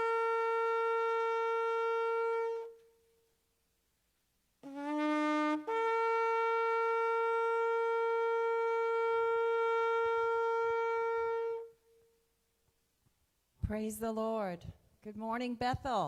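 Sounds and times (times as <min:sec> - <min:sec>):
shofar blown: 0:00.0 - 0:03.3, 0:04.6 - 0:12.3.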